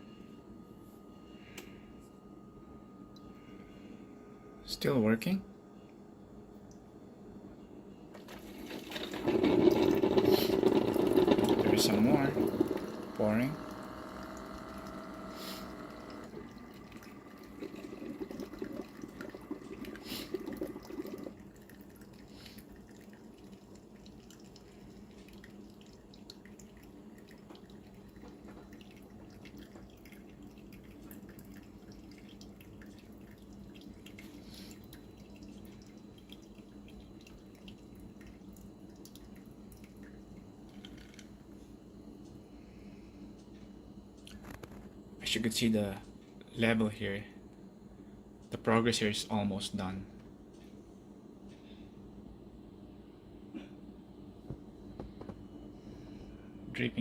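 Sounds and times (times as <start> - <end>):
coffee maker low hum: 0.0 - 5.4, 6.6 - 57.0
coffee dripping: 8.2 - 41.4
coffee streaming into carafe: 8.2 - 41.4.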